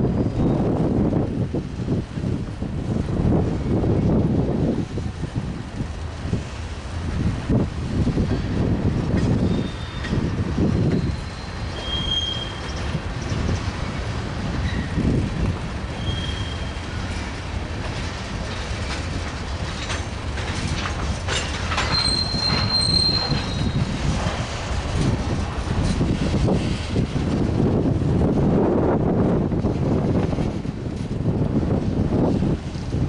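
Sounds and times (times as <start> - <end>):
freight train rumble: 0.0 - 33.0
wheels clicking over rail joints: 4.7 - 33.0
high-pitched wheel squeals: 9.4 - 10.2, 10.8 - 12.9, 16.0 - 16.8, 21.8 - 23.9.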